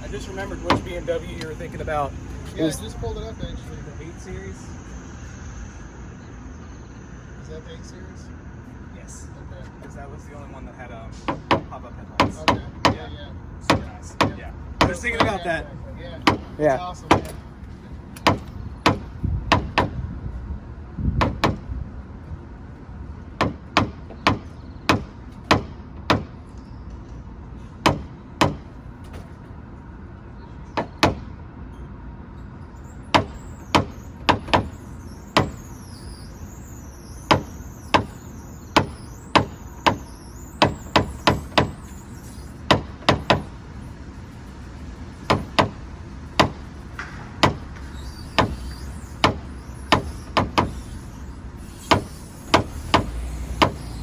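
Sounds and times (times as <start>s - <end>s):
sharp taps on car sheet metal: 11.3s - 13.1s, 13.7s - 15.4s, 18.2s - 20.0s, 27.8s - 28.7s.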